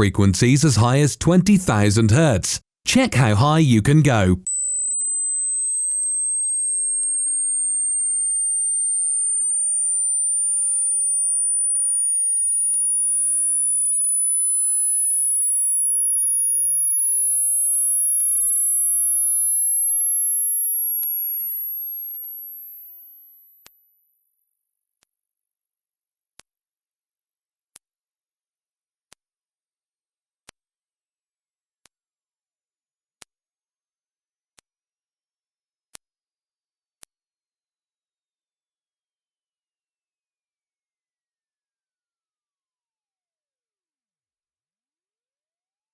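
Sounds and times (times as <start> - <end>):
high-pitched sine test tone: 4.5 - 45.9.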